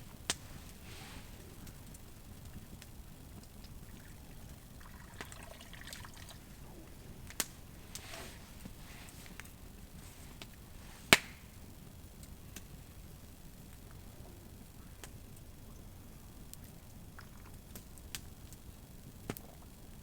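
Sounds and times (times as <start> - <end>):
soft handling and scuffing: 7.8 - 11.2
short sharp snaps: 11.1 - 11.5.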